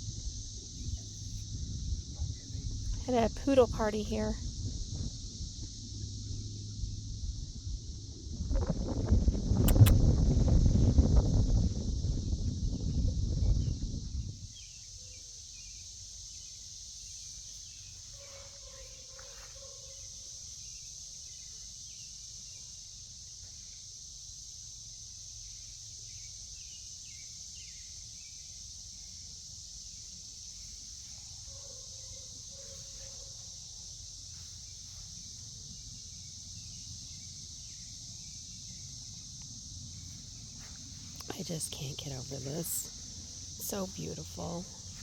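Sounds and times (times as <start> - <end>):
wind rumble: 0.0 - 14.7, 32.4 - 45.0
insects droning: 0.0 - 45.0.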